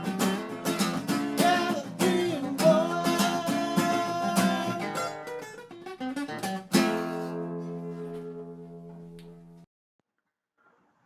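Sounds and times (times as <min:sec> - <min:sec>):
acoustic guitar strumming: 0:00.0 - 0:09.6.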